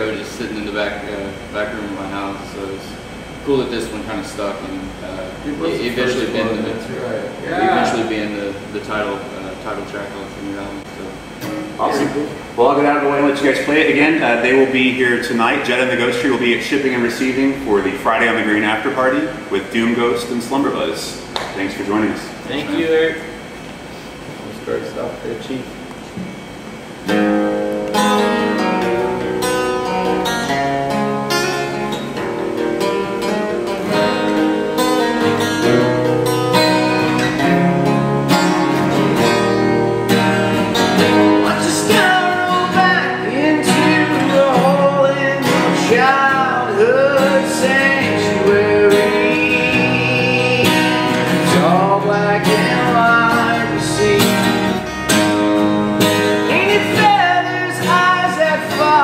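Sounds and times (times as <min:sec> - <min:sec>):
guitar strummed: 0:11.2 - 0:12.6, 0:26.3 - 0:59.0
person singing: 0:41.4 - 0:54.8, 0:56.4 - 0:59.0.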